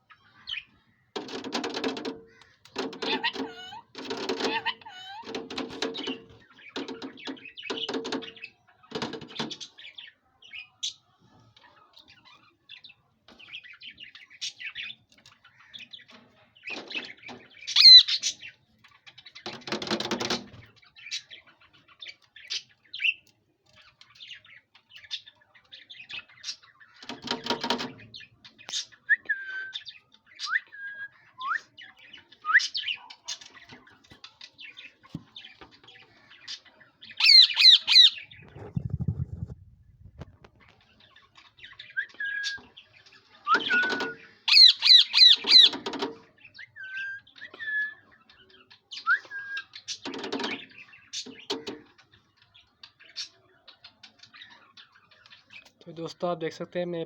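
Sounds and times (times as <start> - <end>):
parrot chirping and squawking: 2.3 - 6.3, 17.7 - 18.4, 37.2 - 39.6, 43.6 - 45.8
parrot speech-like calls: 3.0 - 5.5.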